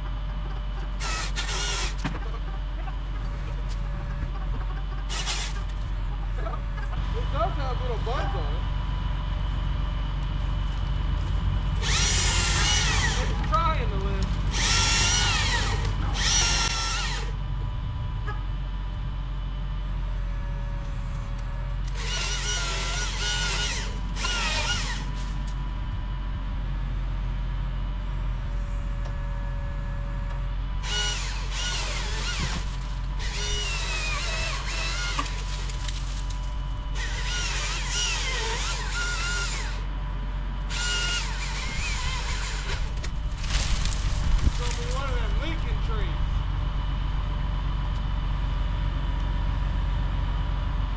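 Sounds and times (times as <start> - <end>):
chainsaw revving through wood: 11.8 - 13.4, 14.5 - 17.4, 21.9 - 25.1, 30.8 - 35.9, 37.0 - 39.9.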